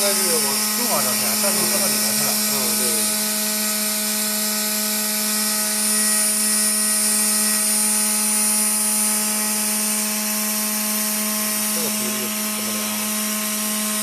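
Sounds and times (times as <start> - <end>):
cnc router humming: 0.0 - 14.0.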